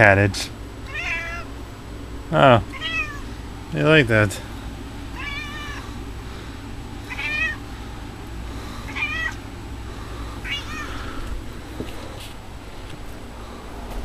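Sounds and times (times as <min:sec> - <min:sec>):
cat meowing: 0:00.9 - 0:01.5, 0:02.7 - 0:03.3, 0:05.1 - 0:05.9, 0:07.0 - 0:07.6, 0:08.9 - 0:09.4, 0:10.4 - 0:11.1.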